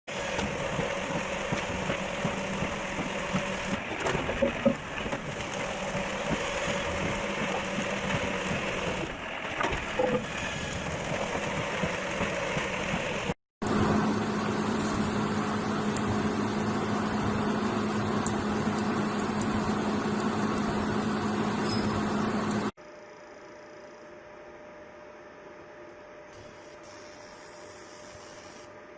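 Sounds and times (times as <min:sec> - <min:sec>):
factory machinery humming: 0:00.1 - 0:22.7
machine with strong even hum: 0:00.1 - 0:28.9.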